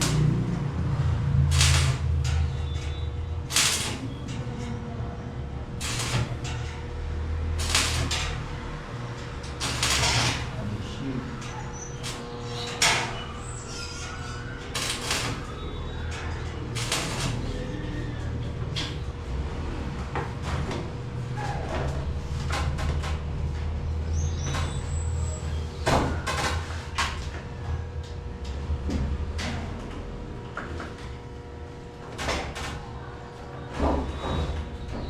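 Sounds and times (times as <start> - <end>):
steady low hum: 0.0 - 33.9
building work knocks and clatter: 33.7 - 35.0.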